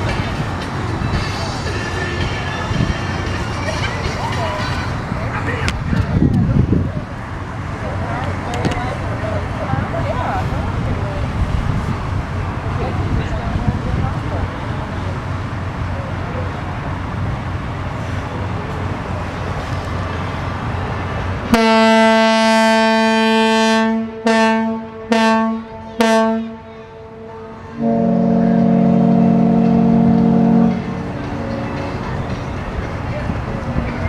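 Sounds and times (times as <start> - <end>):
horn blasts: 21.5 - 31.6.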